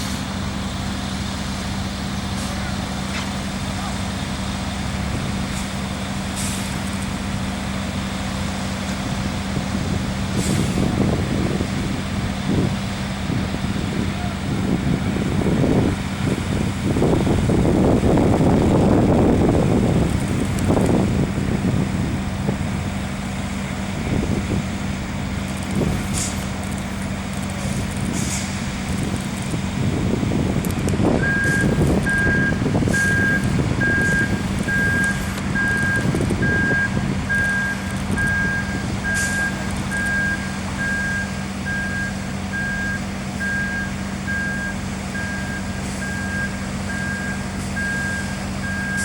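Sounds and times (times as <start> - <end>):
diesel truck engine running: 0.0 - 49.0
short hiss: 26.0 - 26.5, 27.6 - 28.7
short hisses: 28.1 - 28.7.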